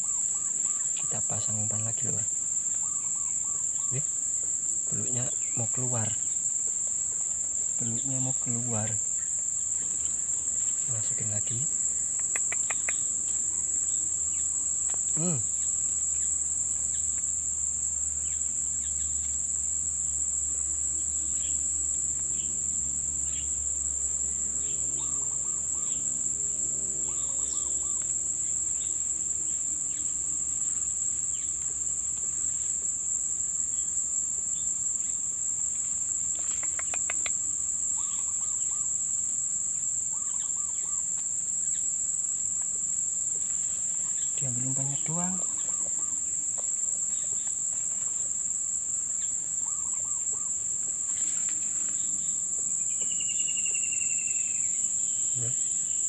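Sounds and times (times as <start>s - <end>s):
faint bird chirps: 0.0s - 4.1s, 10.9s - 14.5s, 24.6s - 26.1s, 27.0s - 29.0s, 36.3s - 39.0s, 40.1s - 41.1s, 44.0s - 46.2s, 49.2s - 50.6s
crickets trilling: 0.0s - 56.0s.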